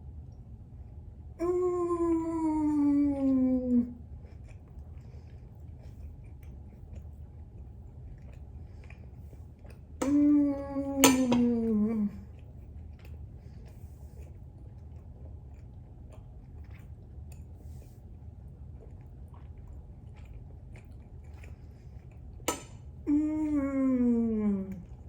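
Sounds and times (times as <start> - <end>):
woman humming mmm while eating: 1.4 - 4.0, 10.0 - 12.3, 23.0 - 25.0.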